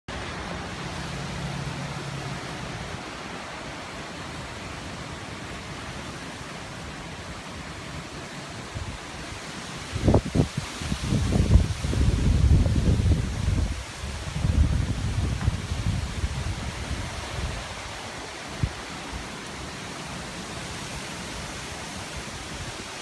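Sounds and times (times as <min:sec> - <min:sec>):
wind and rain rushing hiss: 0:00.1 - 0:23.0
wind buffeting microphone: 0:08.6 - 0:19.4.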